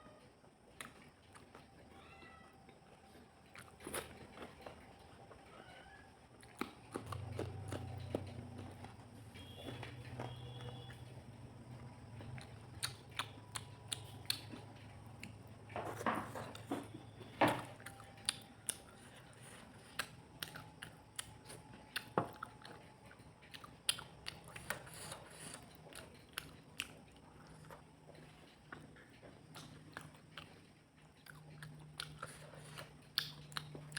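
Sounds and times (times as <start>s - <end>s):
faint low hum: 0.0s - 33.9s
person chewing with wet mouth clicks: 12.3s - 14.6s, 31.2s - 33.9s.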